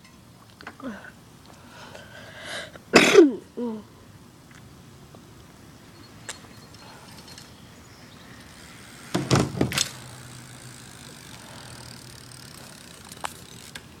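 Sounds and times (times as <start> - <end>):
bike landing with thumps and rattles: 8.5 - 14.0.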